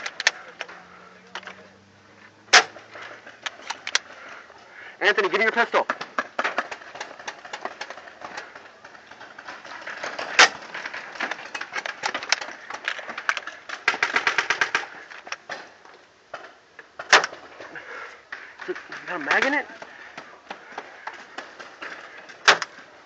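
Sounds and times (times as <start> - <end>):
loud crack: 2.4 - 4.3, 5.6 - 15.7, 16.8 - 23.0.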